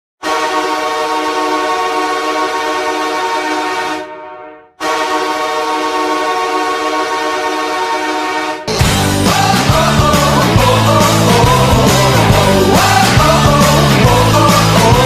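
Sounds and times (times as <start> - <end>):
goal horn blast: 0.2 - 10.1.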